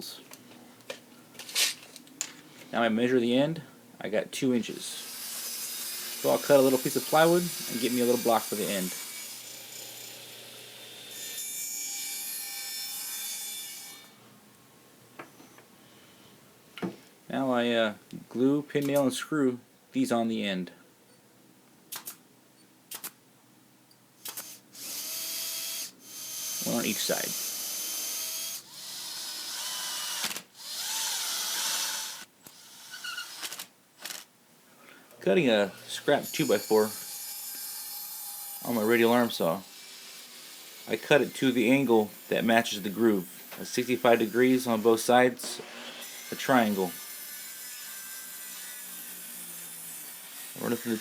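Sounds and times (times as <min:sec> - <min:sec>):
power drill driving screws: 0:05.0 - 0:10.7, 0:24.2 - 0:34.3, 0:39.7 - 0:40.8, 0:45.4 - 0:51.0
saw cutting plywood: 0:05.0 - 0:14.1, 0:35.7 - 0:51.0.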